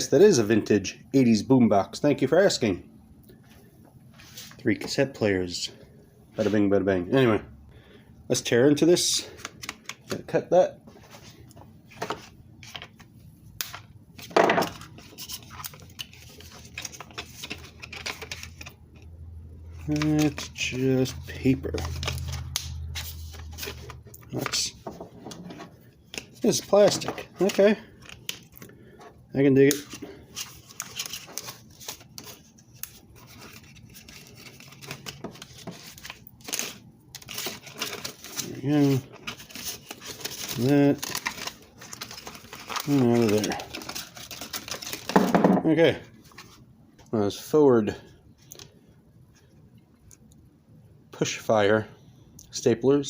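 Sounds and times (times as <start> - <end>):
loud packaging noise: 29.7 - 45.4.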